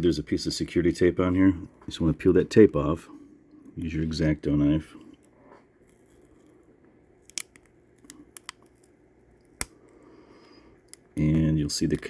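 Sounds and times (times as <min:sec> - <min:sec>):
knife clicking peeling tape: 0:07.3 - 0:08.8.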